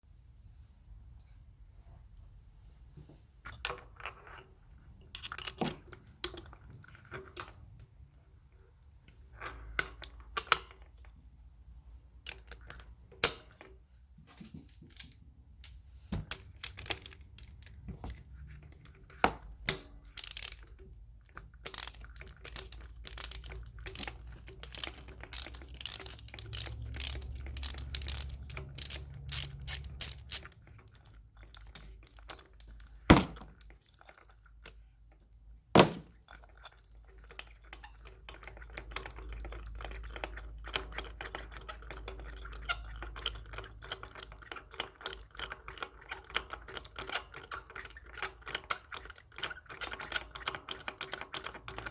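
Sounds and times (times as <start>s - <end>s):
sharp ratchet-like clicks: 20.2s - 20.7s, 21.7s - 30.5s
hand tools clicking and rattling: 20.2s - 20.8s, 21.6s - 30.6s.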